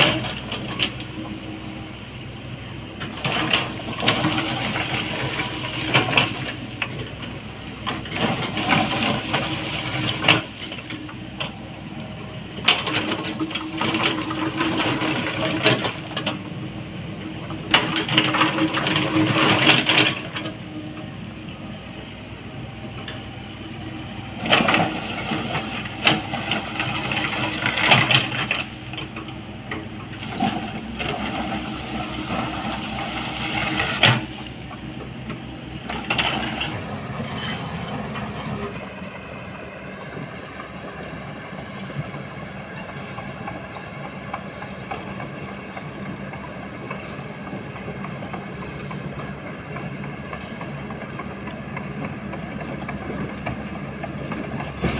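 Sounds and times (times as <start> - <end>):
heavy machine diesel engines: 0.0 - 54.9
clanks and scrapes on stone: 36.2 - 38.8.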